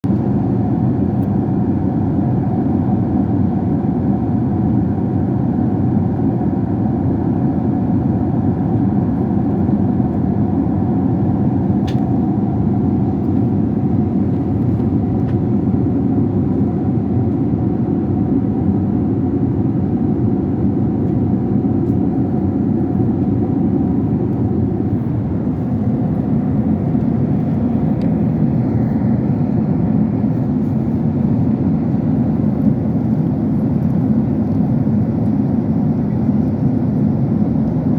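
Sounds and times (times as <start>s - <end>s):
airliner cabin drone: 0.0s - 37.9s
faint hum: 7.6s - 37.9s.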